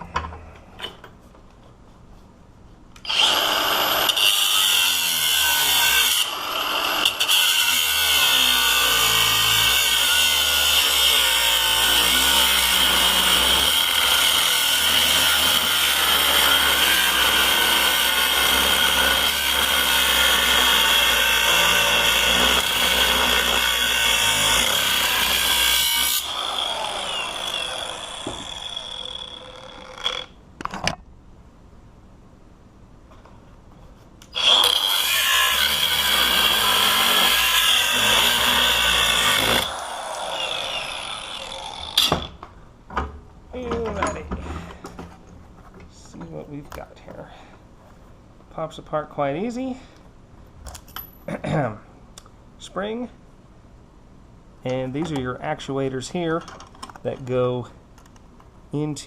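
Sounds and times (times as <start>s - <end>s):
power tool cutting padlock: 3.0s - 30.4s, 34.3s - 42.4s.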